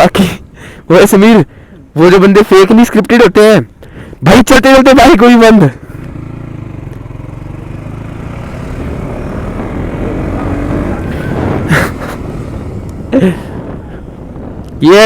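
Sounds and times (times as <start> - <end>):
motorcycle engine rumble: 5.2 - 15.0.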